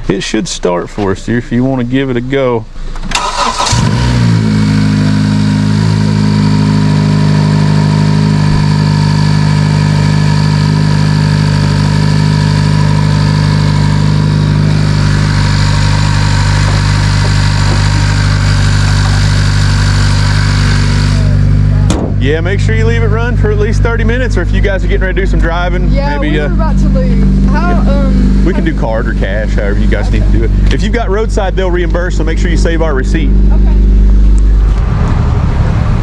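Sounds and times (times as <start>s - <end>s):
car engine idling: 0.0s - 36.0s.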